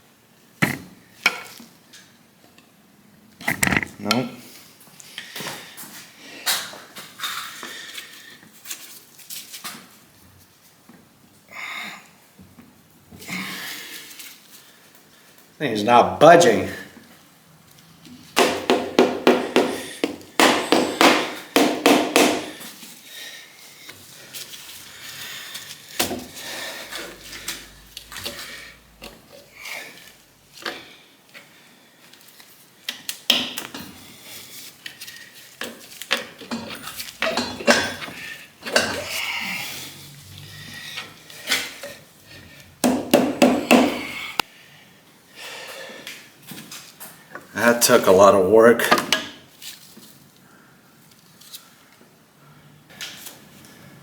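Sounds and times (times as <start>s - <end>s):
hammer striking metal: 18.4s - 22.5s.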